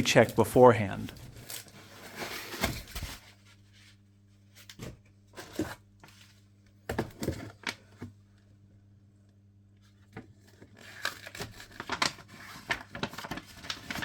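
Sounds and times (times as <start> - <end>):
packaging rustling: 1.1 - 4.0, 10.4 - 14.0.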